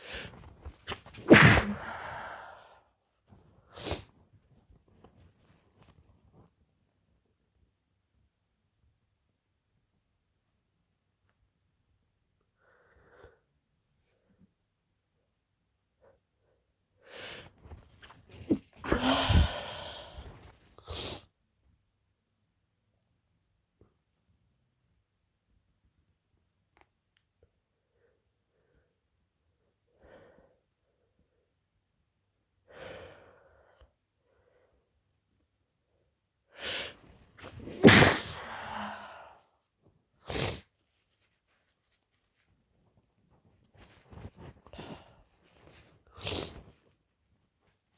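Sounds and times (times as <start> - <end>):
quick breathy inhales: 0.0 - 2.8, 36.6 - 39.4
woman sneezing: 0.9 - 2.3, 18.5 - 19.9, 37.4 - 39.1.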